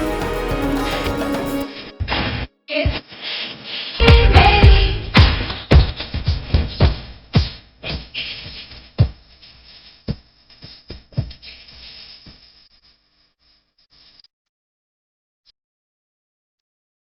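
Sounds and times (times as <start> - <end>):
music with heavy drum beats: 0.0 - 1.6, 4.0 - 7.1.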